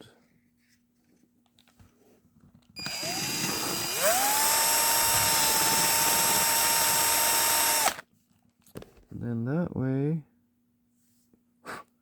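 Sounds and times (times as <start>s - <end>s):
power drill motor whine: 2.8s - 8.0s.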